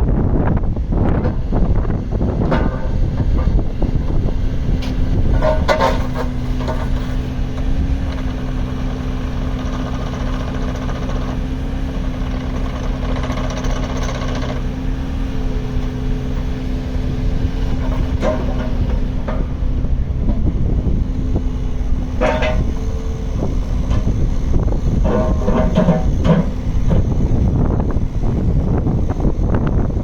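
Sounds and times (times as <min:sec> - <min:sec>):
diesel excavator engine running: 0:00.0 - 0:30.0
metallic knocks: 0:22.1 - 0:23.1, 0:25.0 - 0:27.2.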